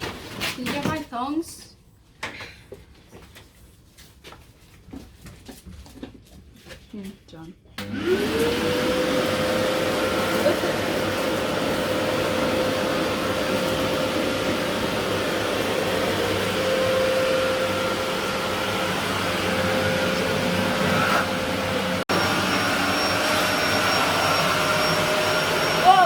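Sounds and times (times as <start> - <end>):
vacuum blower motor whirring: 7.8 - 26.0.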